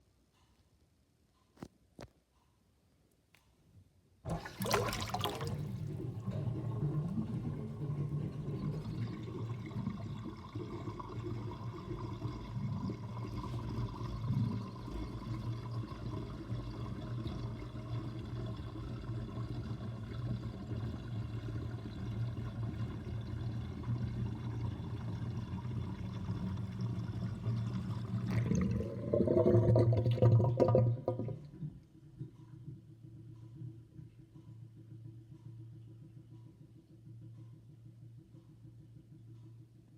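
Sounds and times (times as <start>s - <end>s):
sink drain gurgling: 4.3s - 32.3s.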